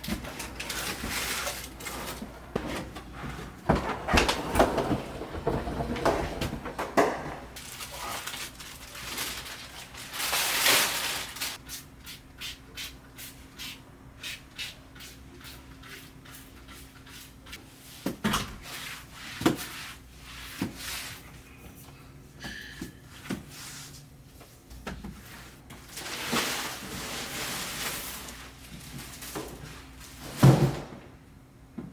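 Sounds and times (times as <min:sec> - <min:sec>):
rubbing and handling noises: 0:07.4 - 0:18.0.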